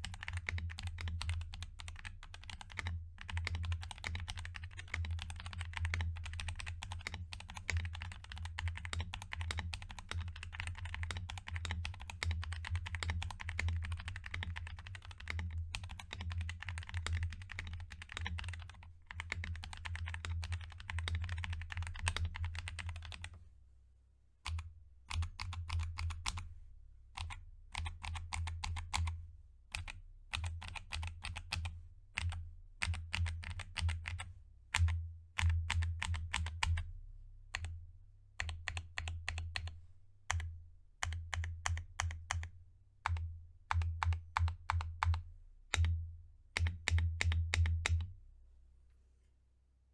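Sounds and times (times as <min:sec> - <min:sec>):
mechanical keyboard typing: 0:00.0 - 0:23.3, 0:27.2 - 0:29.1, 0:29.8 - 0:31.6, 0:32.2 - 0:34.2, 0:34.8 - 0:36.8, 0:38.4 - 0:39.7, 0:41.0 - 0:42.5, 0:43.1 - 0:45.2.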